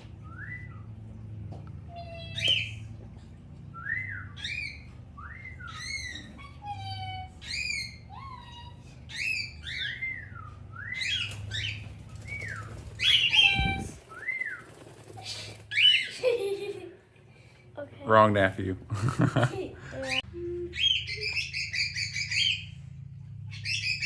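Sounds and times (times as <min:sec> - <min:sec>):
cockatiel chirping: 0:07.4 - 0:11.8, 0:12.4 - 0:14.6, 0:20.8 - 0:22.7.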